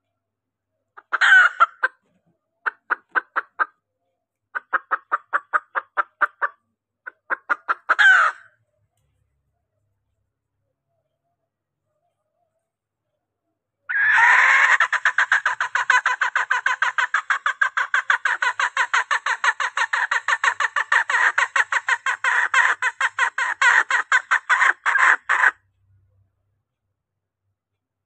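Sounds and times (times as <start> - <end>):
hen clucking rapidly: 1.0 - 2.0, 2.6 - 3.7, 4.6 - 8.5, 13.9 - 25.6.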